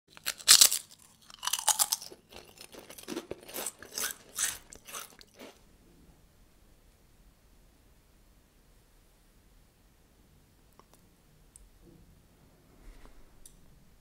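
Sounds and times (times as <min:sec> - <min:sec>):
biting and chewing: 0:00.1 - 0:05.6.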